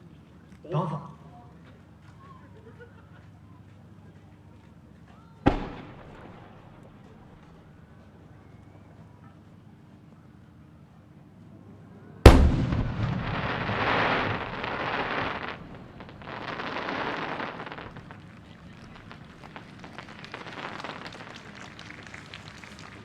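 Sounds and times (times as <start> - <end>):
firework shell boom: 5.5 - 6.9, 12.3 - 18.1
fireworks crackling hiss and pops: 5.5 - 7.8, 12.3 - 23.0.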